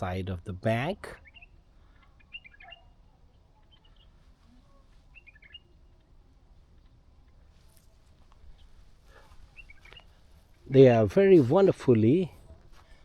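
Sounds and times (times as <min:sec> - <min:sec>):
faint birds chirping: 0:00.2 - 0:13.0.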